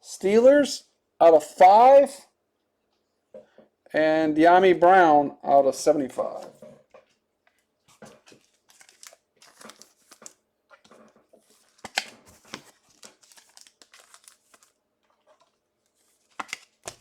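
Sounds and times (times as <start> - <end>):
plastic packaging rustling: 6.4 - 17.0
sharp plastic crackles: 7.9 - 17.0.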